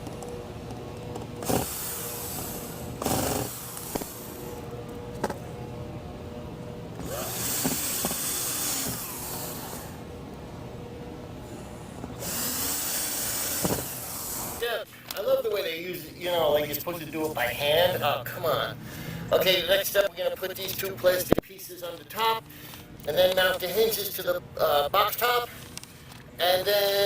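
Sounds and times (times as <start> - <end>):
cordless power driver driving screws: 1.4 - 4.4, 7.0 - 10.0, 12.2 - 14.6.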